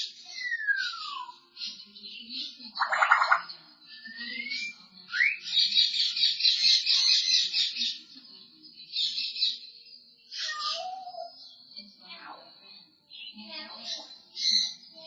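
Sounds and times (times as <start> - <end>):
parrot raspy pulsing buzz: 2.8 - 3.4
parrot whistling: 2.8 - 5.4.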